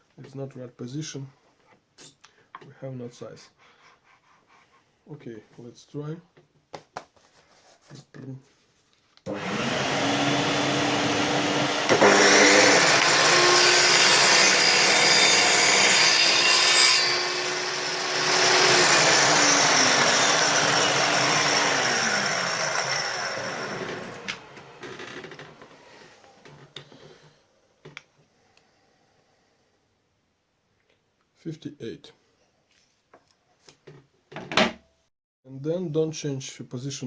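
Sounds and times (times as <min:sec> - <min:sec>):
saw blade cutting workpiece: 0:09.3 - 0:24.7
table saw motor running: 0:09.3 - 0:25.7.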